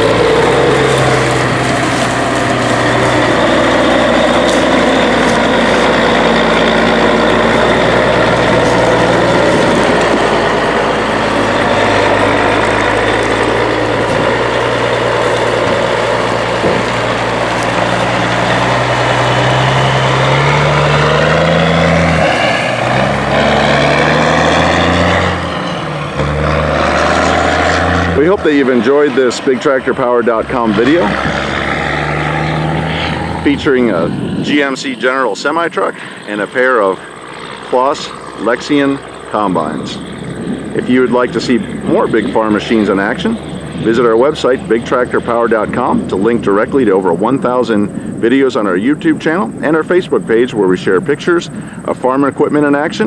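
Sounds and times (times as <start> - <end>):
diesel truck engine revving: 0.0 - 53.0.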